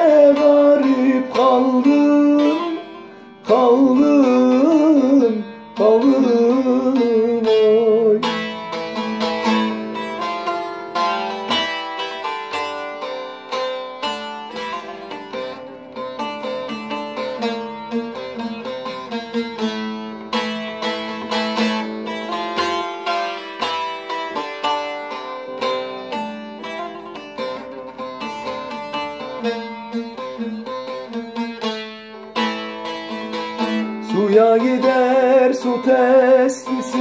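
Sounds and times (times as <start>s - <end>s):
plucked string instrument melody: 0.0s - 37.0s.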